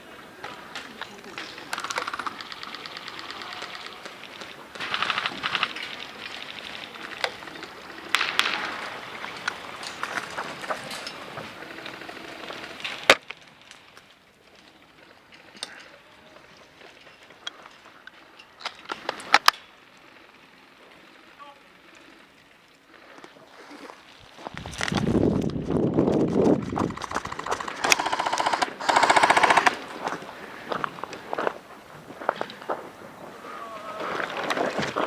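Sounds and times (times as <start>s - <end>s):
airsoft guns firing bursts: 26.9s - 29.9s.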